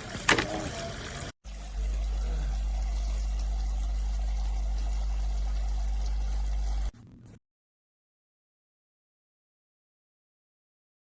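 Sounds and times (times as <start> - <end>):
water pouring from faucet: 0.0 - 6.9
loud low hum: 1.5 - 7.4.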